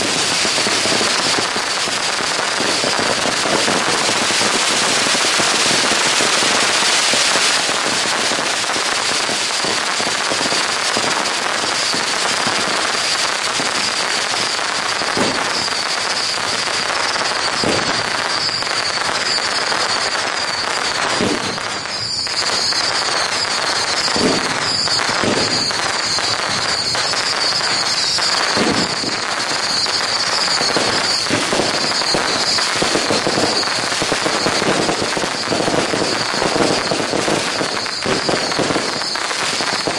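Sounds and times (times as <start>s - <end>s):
firecrackers crackling: 0.0s - 39.9s
loud firecracker bangs: 0.0s - 39.9s
high wavering whistle: 15.3s - 39.9s.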